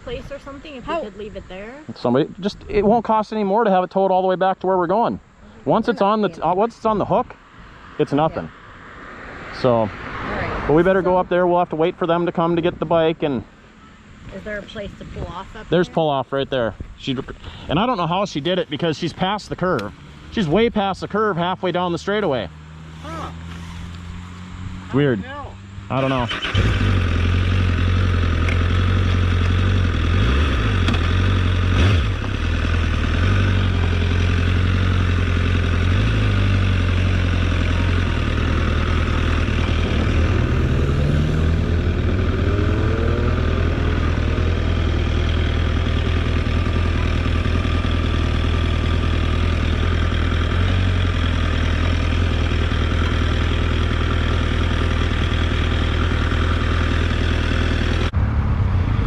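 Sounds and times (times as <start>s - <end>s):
motorcycle engine running: 0.0s - 7.0s, 13.6s - 59.0s
engine note rising in pitch: 20.2s - 59.0s.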